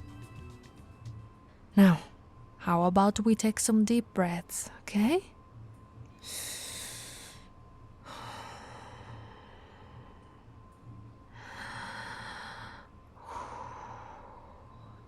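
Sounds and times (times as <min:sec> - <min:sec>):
woman breathing deeply: 0:06.2 - 0:10.6, 0:11.3 - 0:15.0.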